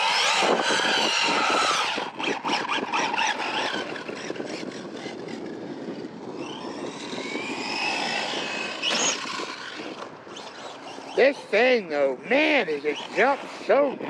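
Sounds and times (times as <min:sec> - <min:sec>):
electric motor whining: 0:00.0 - 0:14.0.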